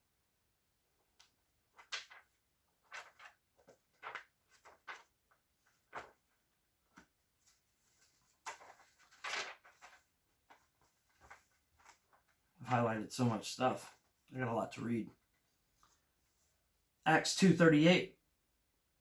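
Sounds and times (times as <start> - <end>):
paper pages rustling: 1.2 - 13.0.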